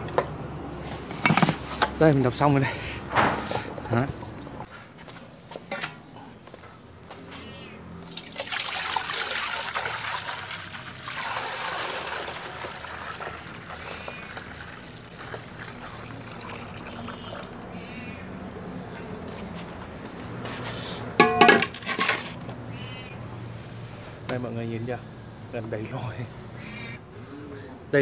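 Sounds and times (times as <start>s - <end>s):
juice pouring into a container: 8.1s - 17.6s.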